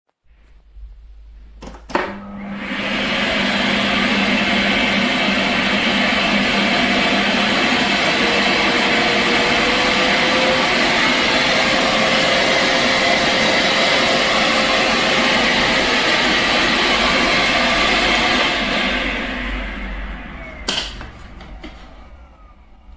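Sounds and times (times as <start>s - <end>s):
vacuum cleaner motor rushing: 1.9s - 22.9s.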